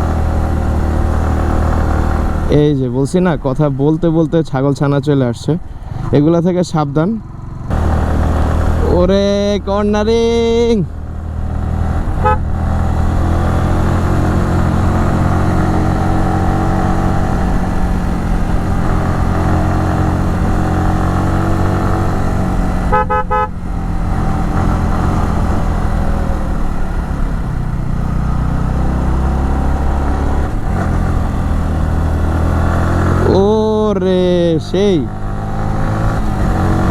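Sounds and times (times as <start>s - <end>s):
motorcycle engine under load: 5.6s - 36.9s
vehicle horn toots: 12.2s - 12.6s, 22.8s - 23.6s.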